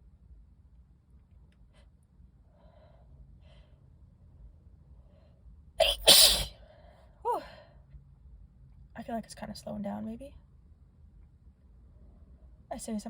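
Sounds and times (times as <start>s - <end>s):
woman sneezing: 5.8s - 6.5s.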